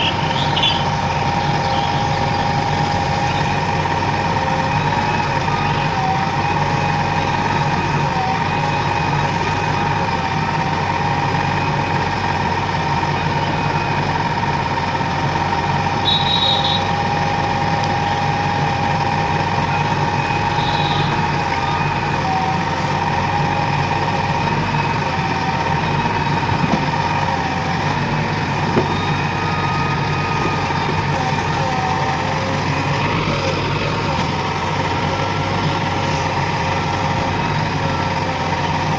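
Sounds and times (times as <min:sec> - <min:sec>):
constant whine: 0:00.0 - 0:38.9
diesel engine running: 0:00.0 - 0:38.9.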